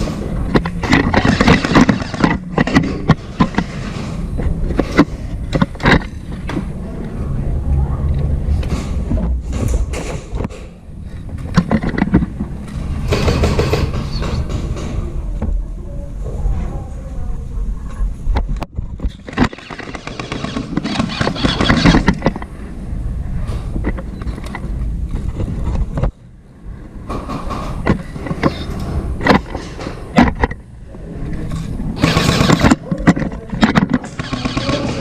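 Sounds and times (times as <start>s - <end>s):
sharp clicks and knocks: 0.0s - 6.7s, 8.6s - 15.6s, 18.3s - 22.5s, 27.1s - 30.6s, 31.6s - 35.0s
low rumble: 0.0s - 19.2s.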